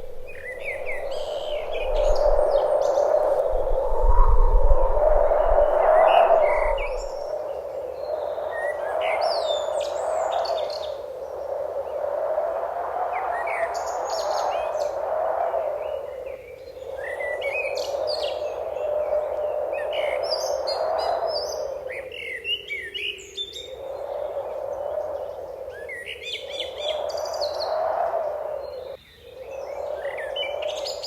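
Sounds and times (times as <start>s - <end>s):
birds chirping and trilling: 0.0s - 4.0s.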